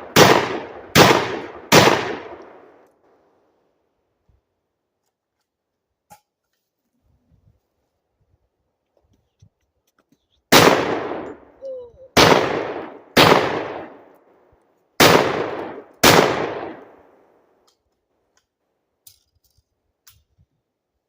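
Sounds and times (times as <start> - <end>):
shotgun shots: 0.0 - 2.8, 10.5 - 11.4, 12.2 - 14.1, 15.0 - 17.1.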